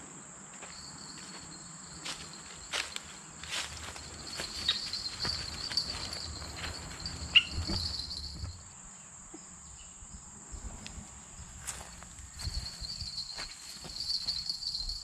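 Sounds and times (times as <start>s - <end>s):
insects trilling: 0.1s - 15.0s
handling knocks and rustles: 2.1s - 8.8s.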